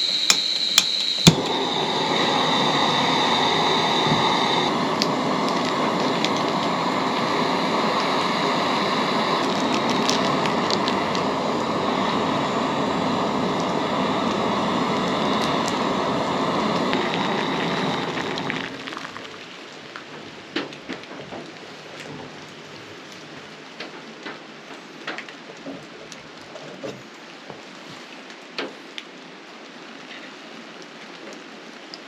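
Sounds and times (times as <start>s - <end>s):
gas stove burner roaring hiss: 0.0s - 25.0s
rain pattering: 0.0s - 32.0s.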